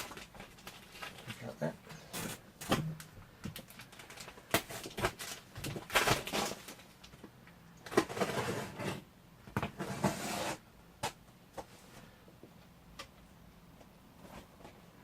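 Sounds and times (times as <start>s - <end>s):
packaging rustling and scraping: 0.0s - 7.2s, 7.8s - 10.6s.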